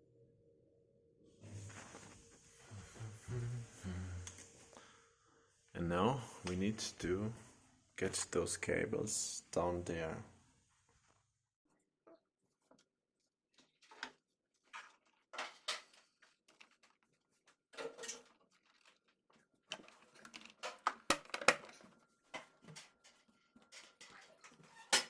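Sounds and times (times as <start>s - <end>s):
cable and plastic clicks and knocks: 19.7s - 21.8s.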